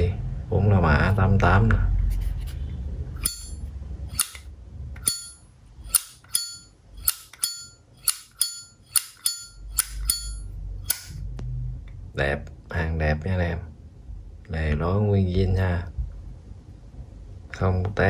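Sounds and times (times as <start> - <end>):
lighter lid clicking open and shut: 4.1 - 4.4, 5.9 - 11.2.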